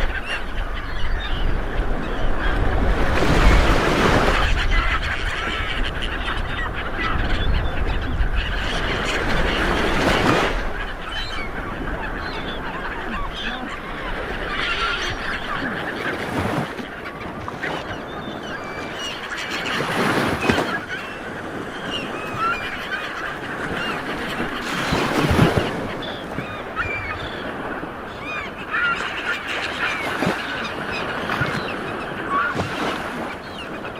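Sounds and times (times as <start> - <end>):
sea water washing: 8.7 - 33.9.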